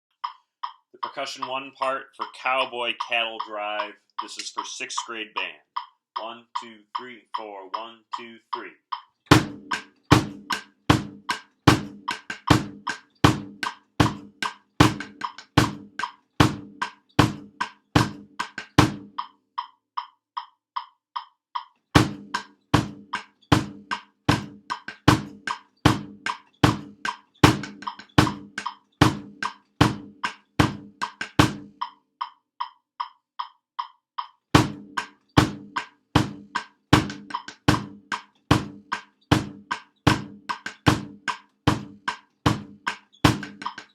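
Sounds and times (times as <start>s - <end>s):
light high drum taps: 0.2s - 43.9s
snare and bass drum playing: 9.3s - 19.2s, 22.0s - 31.9s, 34.6s - 43.9s.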